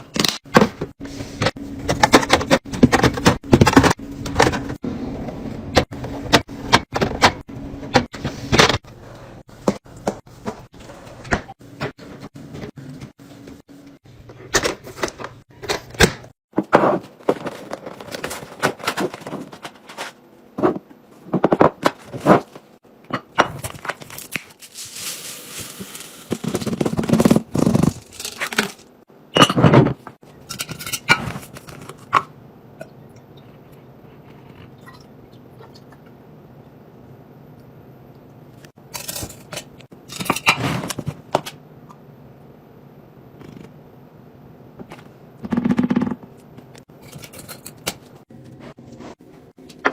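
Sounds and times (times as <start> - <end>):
packaging rustling: 23.6 - 28.9.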